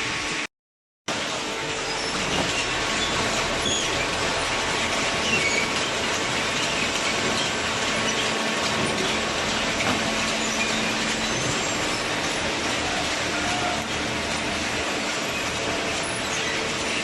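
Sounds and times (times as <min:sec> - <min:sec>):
baler mechanical din: 0:01.2 - 0:17.0
high squeaks: 0:01.8 - 0:04.2, 0:05.1 - 0:08.4.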